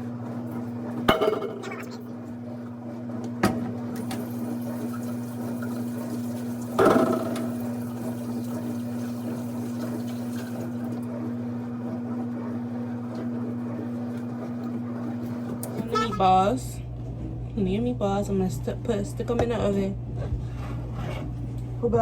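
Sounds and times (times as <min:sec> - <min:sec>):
appliance electrical hum: 0:00.0 - 0:22.0
cookware clattering: 0:01.1 - 0:01.9.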